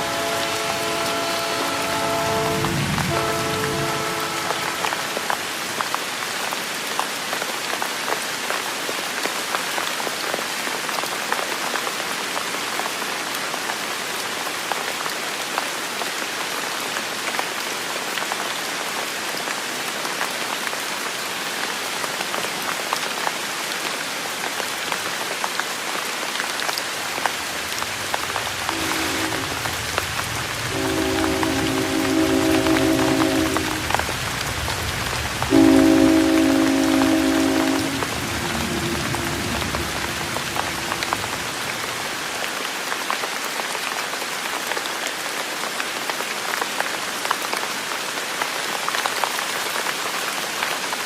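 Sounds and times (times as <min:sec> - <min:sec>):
distant train horn: 0:00.0 - 0:05.5, 0:28.6 - 0:34.2, 0:35.4 - 0:41.2
steady rain: 0:00.0 - 0:51.0.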